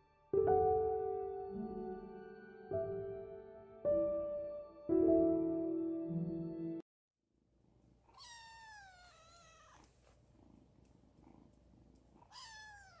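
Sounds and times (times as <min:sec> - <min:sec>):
cat meowing: 0:08.1 - 0:09.9, 0:12.2 - 0:13.0.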